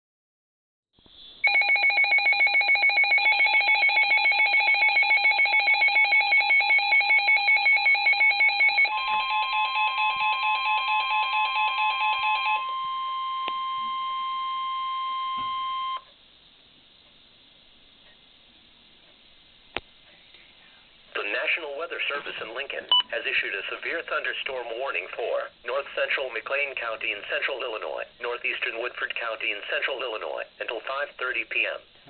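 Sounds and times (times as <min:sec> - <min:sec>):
steady warning alarm tone: 0:01.4 - 0:16.1.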